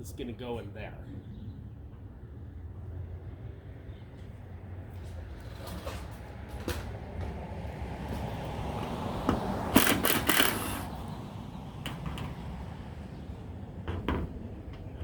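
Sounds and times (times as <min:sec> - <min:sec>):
parts and tools clicking: 0:09.7 - 0:10.9.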